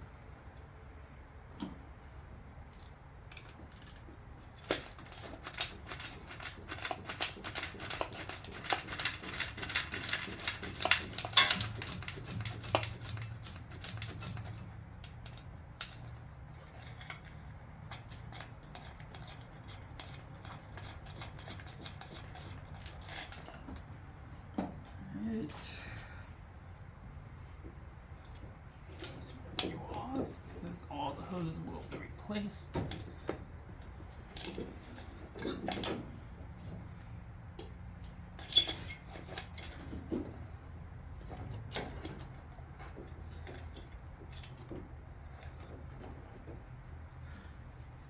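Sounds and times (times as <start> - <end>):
hand tools clicking on metal: 4.7 - 16.0.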